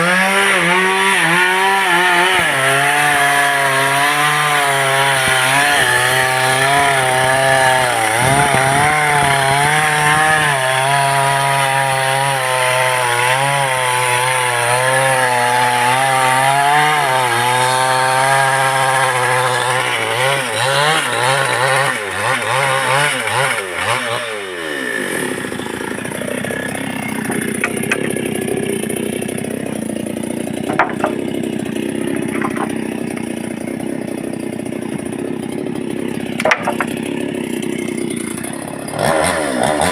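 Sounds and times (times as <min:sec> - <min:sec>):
chainsaw cutting wood: 0:00.0 - 0:39.9
sharp knocks: 0:27.2 - 0:28.2, 0:30.6 - 0:31.4, 0:32.2 - 0:32.8, 0:36.4 - 0:37.0.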